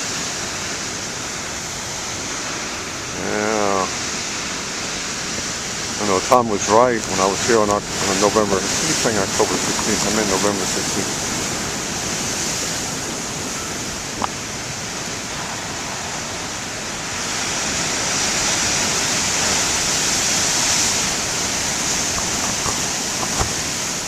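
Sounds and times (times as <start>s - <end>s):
heavy ocean surf breaking: 0.0s - 24.0s.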